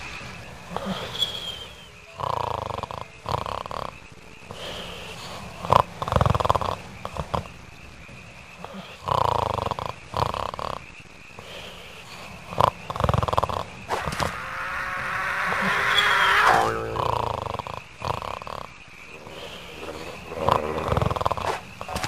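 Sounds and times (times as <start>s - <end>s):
person snoring: 2.1s - 7.5s, 8.6s - 10.8s, 11.4s - 22.0s.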